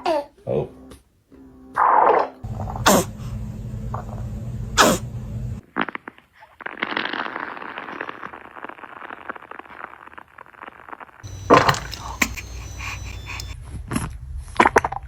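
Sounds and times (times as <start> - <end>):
low hum: 2.4 - 5.6, 11.2 - 13.7
baby farting: 5.7 - 13.6.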